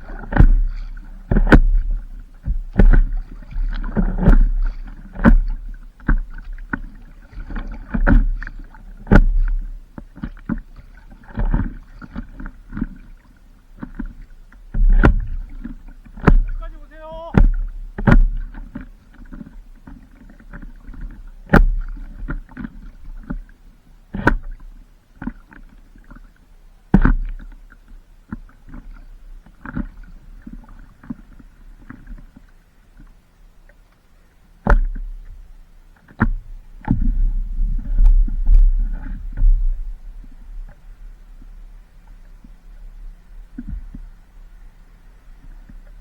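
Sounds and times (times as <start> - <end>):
paddle splashing in water: 0.0 - 46.0
wind rumble on microphone: 36.2 - 45.9.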